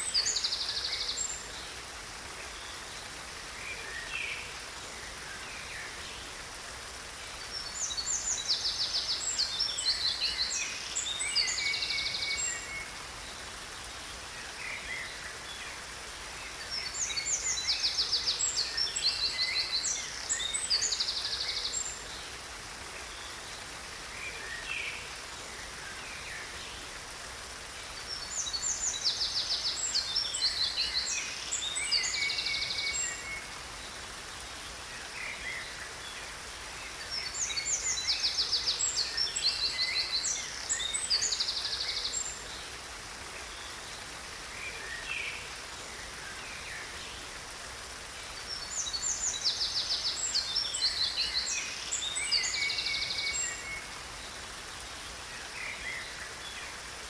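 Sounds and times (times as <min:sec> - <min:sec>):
rushing water: 0:00.0 - 0:57.0
songbird chirps and trills: 0:00.0 - 0:57.0.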